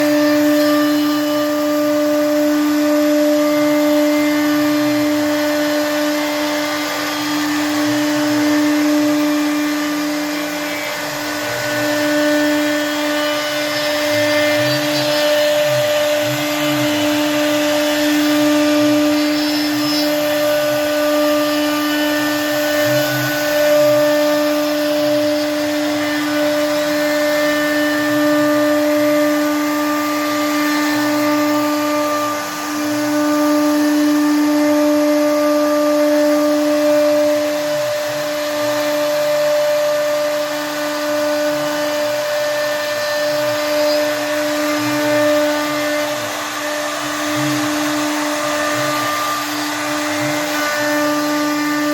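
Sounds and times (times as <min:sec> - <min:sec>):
bits cutting wood: 0:00.0 - 0:51.9
router spindles whining: 0:00.0 - 0:51.9.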